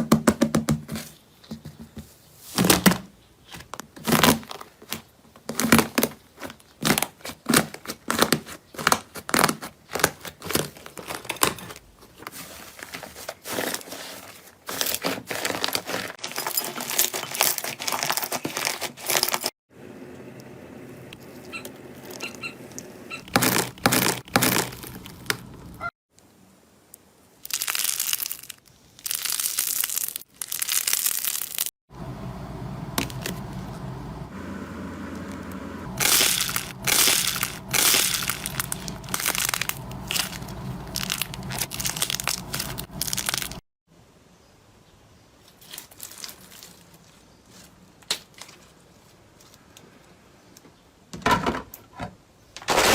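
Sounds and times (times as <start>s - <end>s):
slime crackling and popping: 27.4s - 31.7s, 36.0s - 43.6s.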